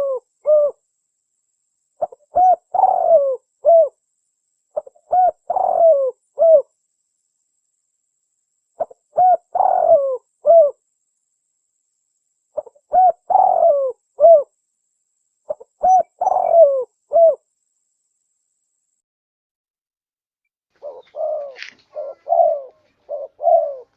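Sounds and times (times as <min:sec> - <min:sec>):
dove cooing: 0:00.0 - 0:00.8, 0:02.0 - 0:04.0, 0:04.8 - 0:06.7, 0:08.8 - 0:10.8, 0:12.6 - 0:14.5, 0:15.5 - 0:17.4, 0:20.8 - 0:23.9.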